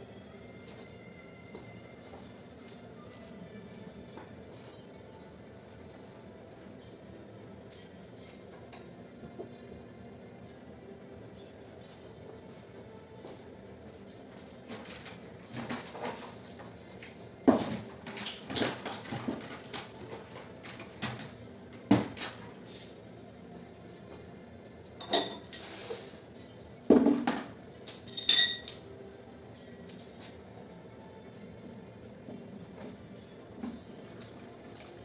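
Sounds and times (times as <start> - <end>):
ringing metallic clink: 27.9 - 28.8.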